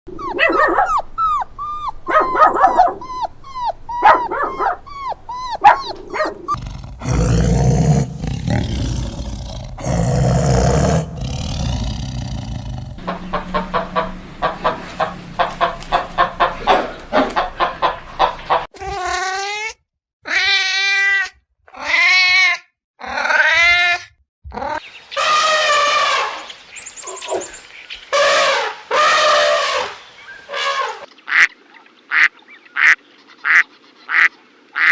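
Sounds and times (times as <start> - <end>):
dog-like barking: 0.2 - 1.0, 2.1 - 3.1, 4.0 - 6.6
harsh noisy animal call: 6.5 - 16.9.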